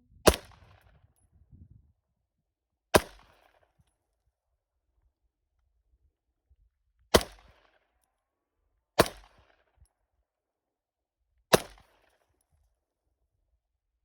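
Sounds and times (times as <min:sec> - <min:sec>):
gunshots: 0:00.2 - 0:00.8.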